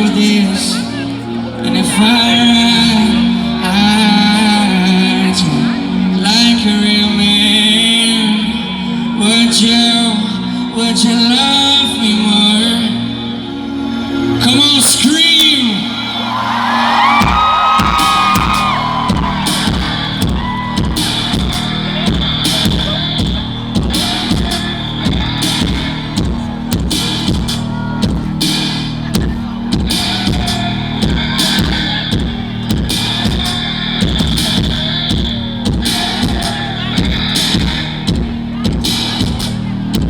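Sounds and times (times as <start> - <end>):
driving drum beat: 17.2 - 40.0.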